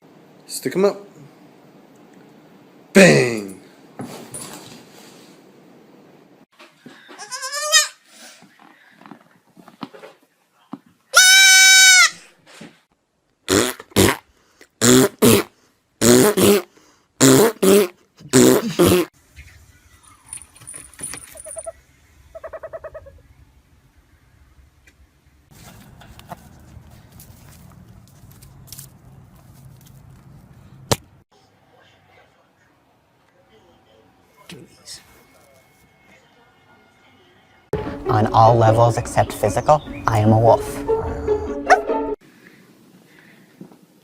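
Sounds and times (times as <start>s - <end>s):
loud animal calls: 21.2s - 23.4s.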